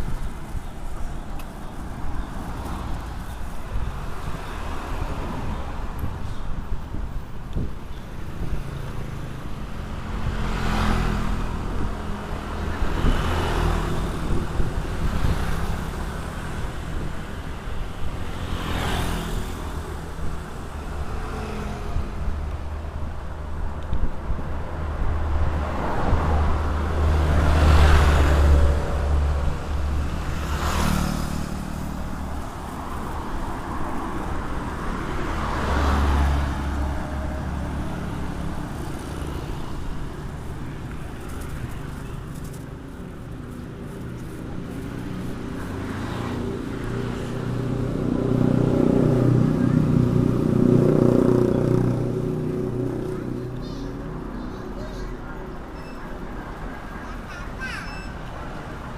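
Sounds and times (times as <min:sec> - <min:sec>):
vehicles passing: 0:00.0 - 0:58.9.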